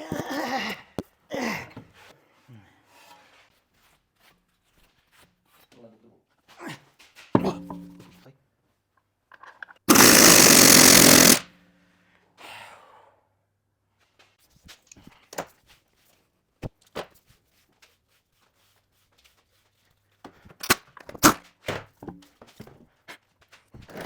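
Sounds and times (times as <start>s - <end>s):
tools clicking and knocking: 9.4s - 11.4s
power tool running: 9.9s - 11.4s.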